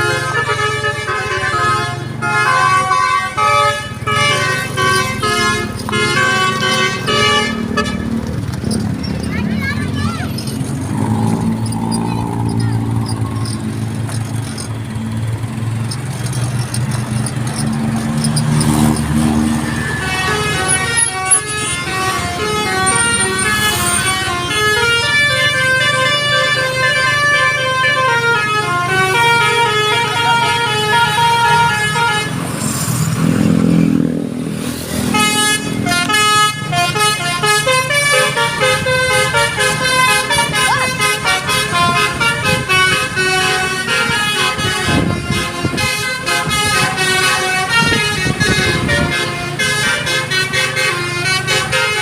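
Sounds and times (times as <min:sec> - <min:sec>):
bus engine idling: 0:00.0 - 0:32.4
musical bus horn melody: 0:00.0 - 0:34.0, 0:34.9 - 0:52.0.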